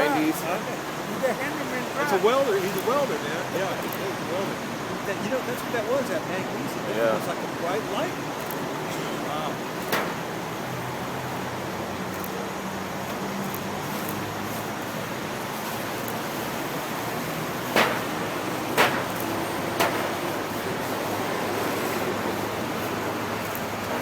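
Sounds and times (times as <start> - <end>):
freeway traffic rushing: 0.0 - 24.0
sharp pops: 9.7 - 10.7, 17.6 - 20.7.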